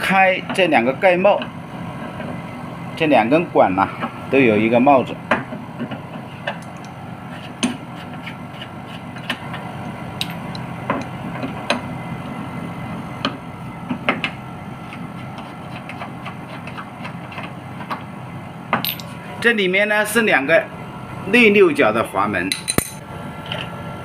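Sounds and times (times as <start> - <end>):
air conditioner unit humming: 0.0 - 24.0.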